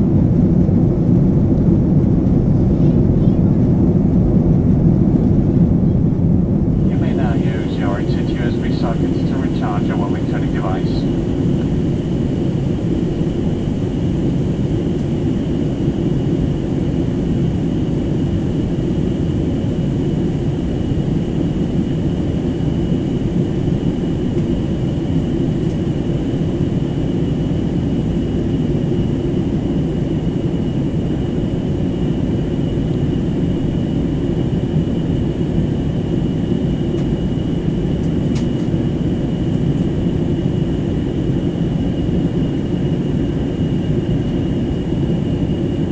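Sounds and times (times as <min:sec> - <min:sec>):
airliner cabin engine drone: 0:00.0 - 0:45.9
faint high whine: 0:06.8 - 0:14.0.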